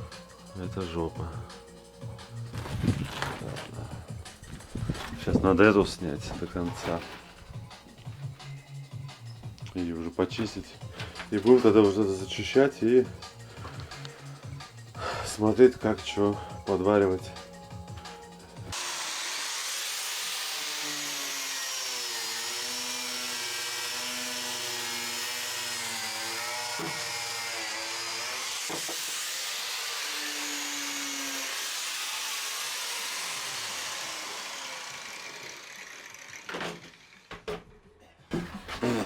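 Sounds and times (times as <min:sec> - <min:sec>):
power tool whining on sheet metal: 0:17.8 - 0:37.5.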